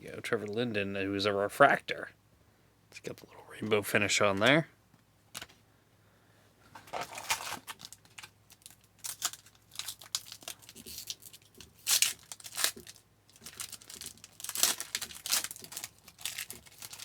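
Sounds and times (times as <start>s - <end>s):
protective film rustling: 6.7s - 17.0s
trading cards crinkling: 6.8s - 17.0s.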